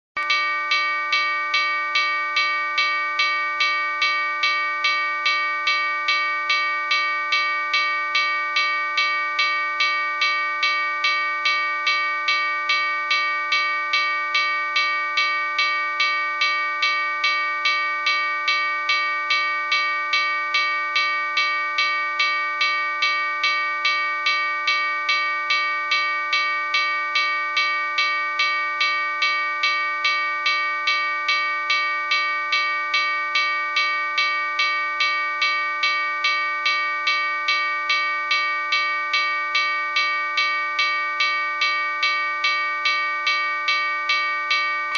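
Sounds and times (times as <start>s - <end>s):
railroad crossing bell ringing: 0.2s - 44.9s.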